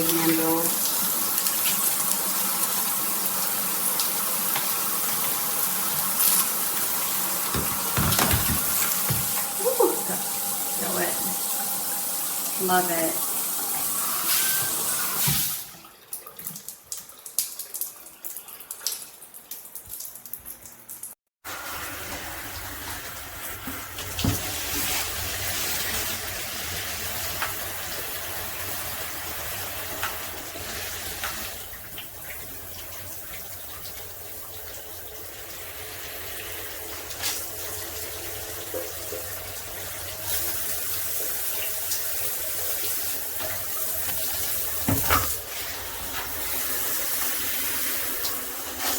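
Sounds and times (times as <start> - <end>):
shower water spraying: 0.0 - 15.8, 35.7 - 38.9, 39.6 - 48.9
water dripping: 15.3 - 21.2.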